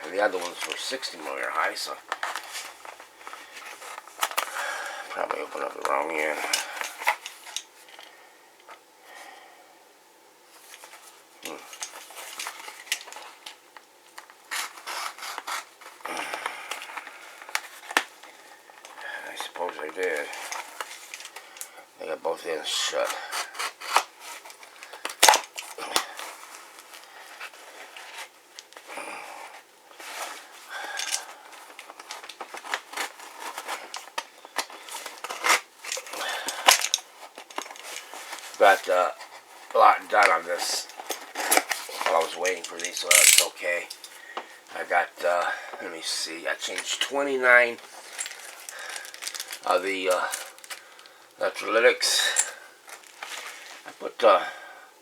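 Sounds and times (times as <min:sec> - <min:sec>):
cardboard parcel rustling: 0:00.0 - 0:08.2, 0:10.5 - 0:54.2
package rubbing and scraping: 0:14.3 - 0:21.6, 0:22.7 - 0:45.1.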